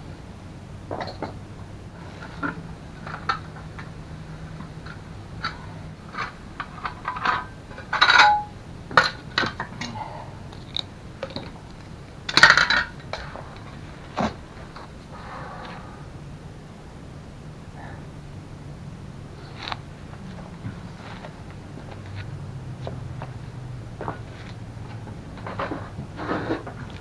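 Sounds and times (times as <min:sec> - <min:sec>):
metal tools clinking: 0:04.8 - 0:10.0, 0:12.3 - 0:13.4.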